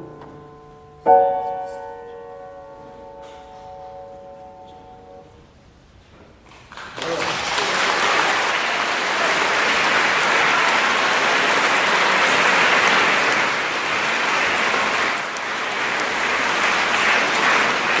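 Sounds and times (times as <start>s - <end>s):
audience applauding: 6.5s - 18.0s.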